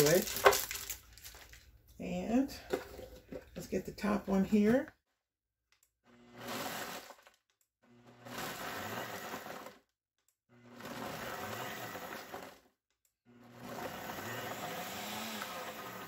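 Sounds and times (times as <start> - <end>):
blender grinding in bursts: 0.0 - 0.8, 6.0 - 9.9, 10.5 - 12.7, 13.3 - 16.0.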